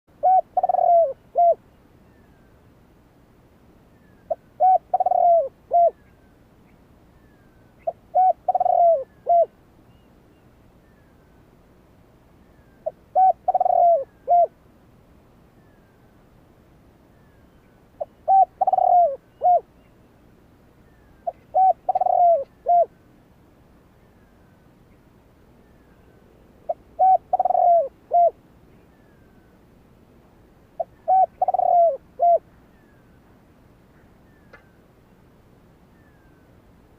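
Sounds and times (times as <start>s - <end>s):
dove cooing: 0.1s - 1.6s, 4.3s - 6.0s, 7.8s - 9.6s, 12.8s - 14.6s, 18.0s - 19.7s, 21.2s - 23.0s, 26.6s - 29.2s, 30.8s - 32.5s.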